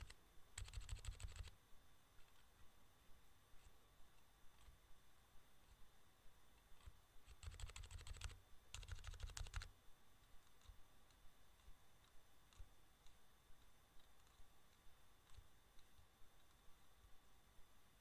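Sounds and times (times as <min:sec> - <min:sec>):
rapid clicking: 0:00.0 - 0:01.5, 0:07.3 - 0:09.7.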